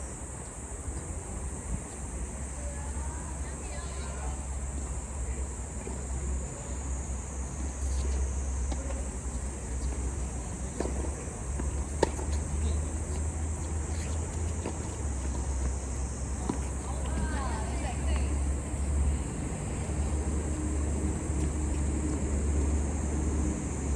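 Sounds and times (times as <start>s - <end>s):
tennis ball struck by rackets: 9.9s - 17.2s.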